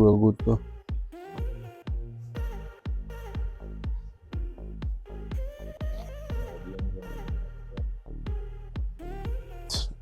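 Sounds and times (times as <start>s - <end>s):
thumping kick drum: 0.0s - 10.0s
electronic dance music: 4.4s - 9.0s.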